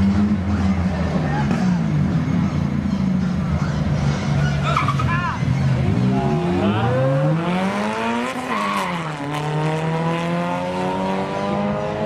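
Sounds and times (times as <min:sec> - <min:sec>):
racing car engine accelerating: 0:04.8 - 0:12.0.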